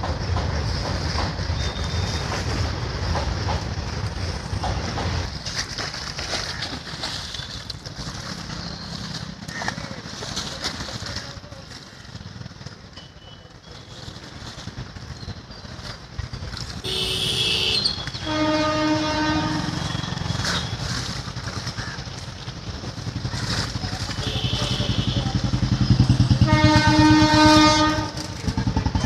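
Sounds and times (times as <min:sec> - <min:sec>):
vehicle engine throbbing: 0:14.2 - 0:29.0
car horn: 0:16.8 - 0:20.8, 0:24.2 - 0:25.4, 0:26.4 - 0:28.3.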